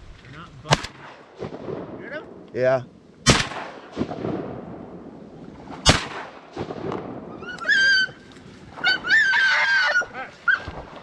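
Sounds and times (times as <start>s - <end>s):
shotgun shot: 0.7s - 2.0s, 3.2s - 4.6s, 5.8s - 7.2s.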